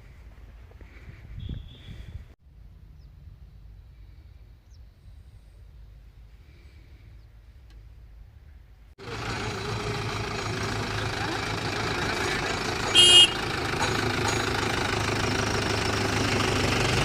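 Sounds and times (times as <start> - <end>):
diesel engine running: 9.0 - 17.0.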